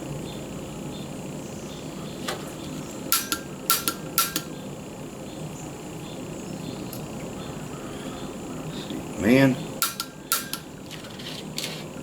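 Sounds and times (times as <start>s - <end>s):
piezo igniter clicking: 1.8s - 5.4s, 6.0s - 7.4s, 9.6s - 12.0s
short metallic ring: 3.2s - 4.5s.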